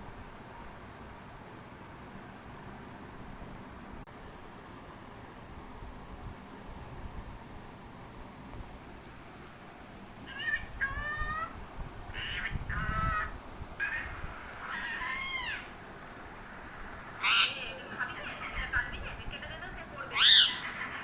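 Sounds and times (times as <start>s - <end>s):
parrot calling: 10.2s - 15.8s, 17.1s - 19.2s, 20.0s - 21.0s.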